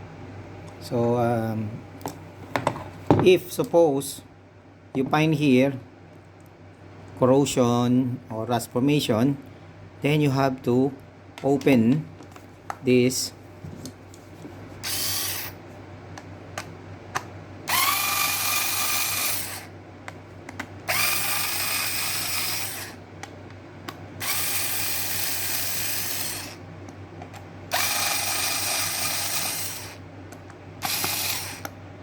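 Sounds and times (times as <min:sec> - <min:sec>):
electric screwdriver motor: 0:14.8 - 0:15.6, 0:17.7 - 0:19.7, 0:20.9 - 0:23.0, 0:24.2 - 0:26.6, 0:27.7 - 0:30.0, 0:30.8 - 0:31.7.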